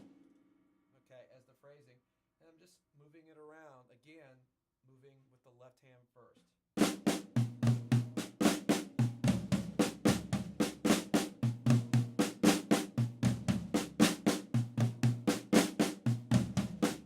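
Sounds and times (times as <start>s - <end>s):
drum kit played with sticks: 0.0s - 0.2s, 6.8s - 17.0s.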